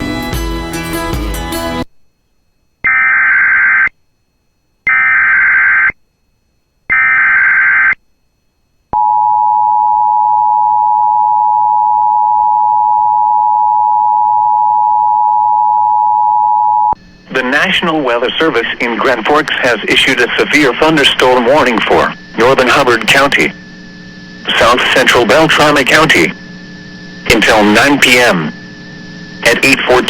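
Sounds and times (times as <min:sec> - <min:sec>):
buzzing digital data bursts: 0:17.2 - 0:30.0.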